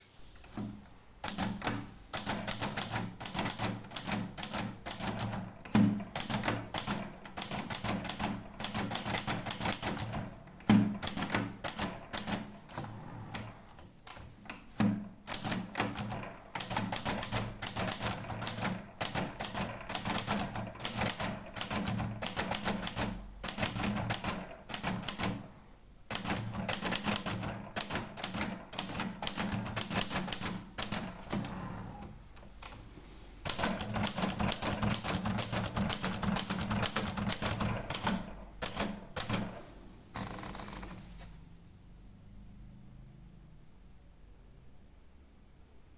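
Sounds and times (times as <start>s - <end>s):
typewriter key strikes clacking: 0.5s - 25.5s, 26.1s - 32.8s, 33.5s - 41.0s
heavier typewriter thuds: 0.6s - 13.7s.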